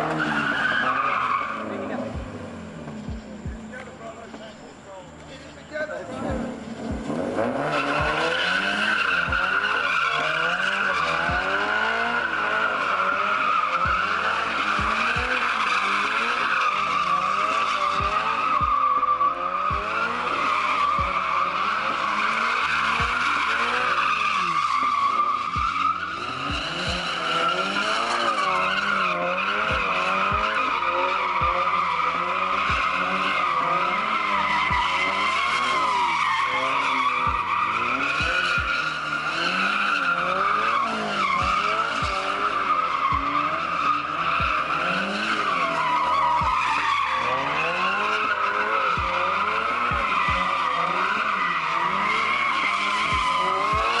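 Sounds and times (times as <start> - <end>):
car engine revving: 0.0 - 54.0
tire squeal: 0.0 - 54.0.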